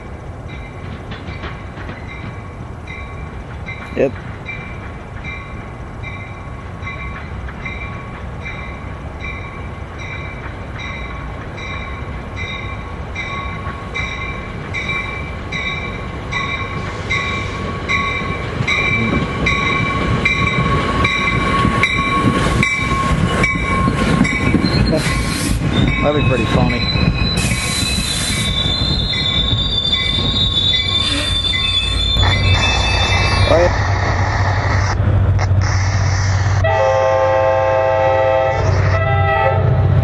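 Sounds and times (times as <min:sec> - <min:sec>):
train rumble: 0:00.0 - 0:40.0
bell ringing steadily: 0:25.9 - 0:27.1.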